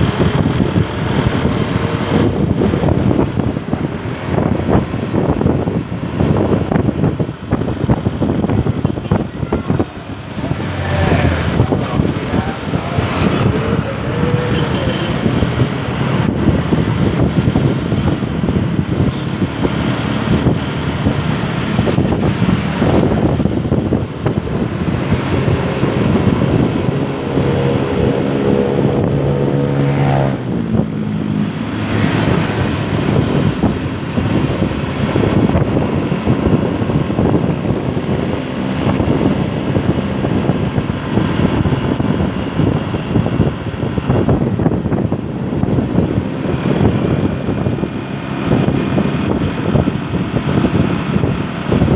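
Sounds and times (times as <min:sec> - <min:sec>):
vehicle road noise: 0:00.0 - 0:51.9.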